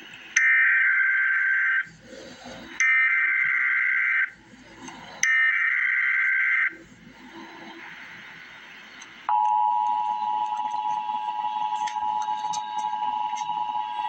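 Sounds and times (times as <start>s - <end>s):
two-tone attention signal: 9.3s - 14.0s.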